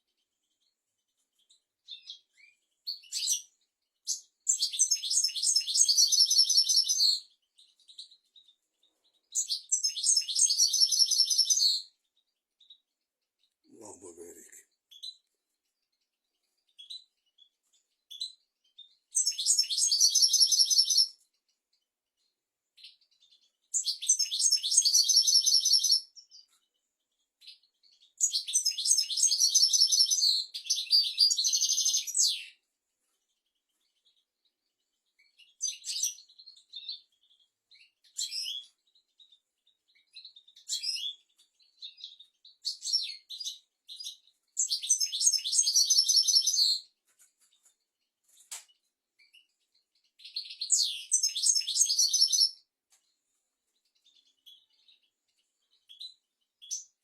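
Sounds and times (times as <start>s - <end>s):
goldfinch singing: 1.9s - 8.5s, 9.3s - 11.9s, 18.1s - 21.2s, 22.8s - 26.2s, 27.4s - 32.6s, 39.9s - 46.8s, 50.2s - 52.6s.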